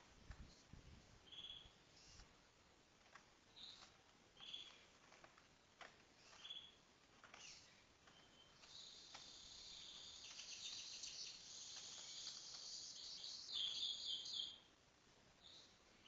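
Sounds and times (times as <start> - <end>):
songbird trilling: 8.2 - 14.7.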